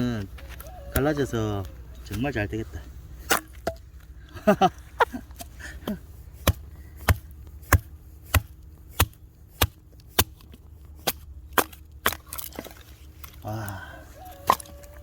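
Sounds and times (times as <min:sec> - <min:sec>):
hatchet chopping firewood: 0:03.2 - 0:04.2, 0:05.2 - 0:15.0.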